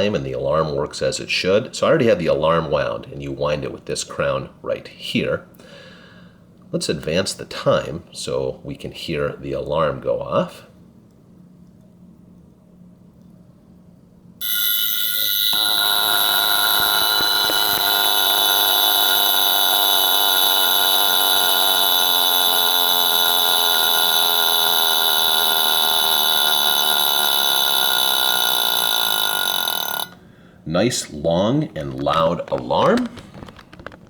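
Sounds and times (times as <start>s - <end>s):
mechanical alarm clock ringing: 14.4s - 30.2s.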